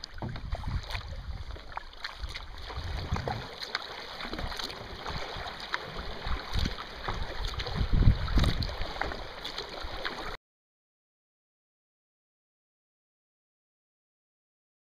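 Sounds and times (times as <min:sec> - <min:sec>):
paddle splashes: 0:00.0 - 0:10.4
water lapping at hull: 0:00.0 - 0:10.4
wind buffeting microphone: 0:00.2 - 0:03.5, 0:06.2 - 0:08.8.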